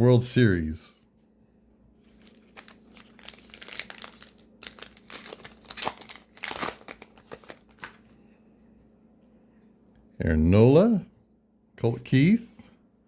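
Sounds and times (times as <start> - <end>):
foil wrapper crinkling and tearing: 2.1 - 8.1.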